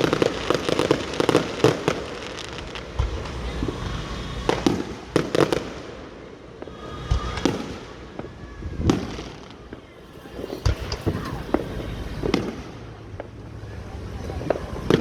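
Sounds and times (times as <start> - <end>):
fireworks bangs: 0.0 - 15.0
steady low rumble: 9.6 - 15.0.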